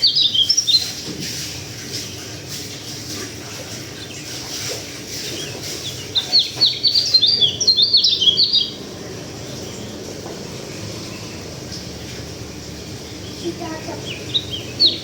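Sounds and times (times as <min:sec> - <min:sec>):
bird chirping: 0:00.0 - 0:01.0, 0:03.6 - 0:11.9, 0:12.5 - 0:15.0.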